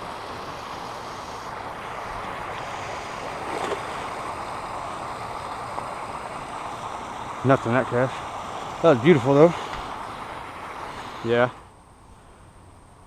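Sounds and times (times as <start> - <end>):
creek water rushing: 0.0 - 13.0
lure splashing into water: 3.3 - 4.3.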